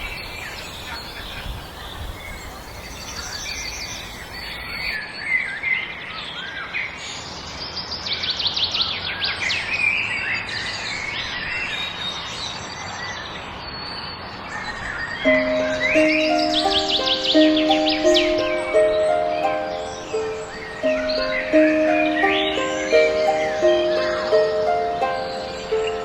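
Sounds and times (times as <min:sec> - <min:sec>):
songbirds chirping and singing: 0:09.5 - 0:26.0
piano notes: 0:15.3 - 0:26.0
steady background hiss: 0:15.3 - 0:26.0.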